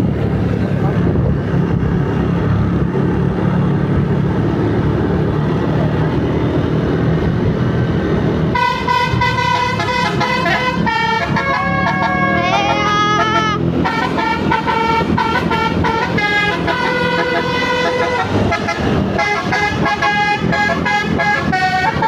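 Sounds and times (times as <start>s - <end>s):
bus engine low rumble: 0.0s - 22.0s
multi-tone horn playing a tune: 8.5s - 22.0s.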